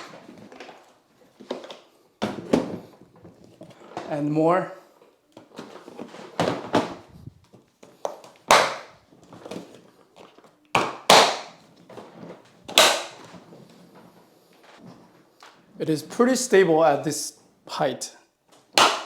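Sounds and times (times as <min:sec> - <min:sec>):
plastic boxes knocking and snapping: 0:00.0 - 0:04.1, 0:05.4 - 0:07.1, 0:08.0 - 0:09.8, 0:10.7 - 0:13.5, 0:18.5 - 0:19.0.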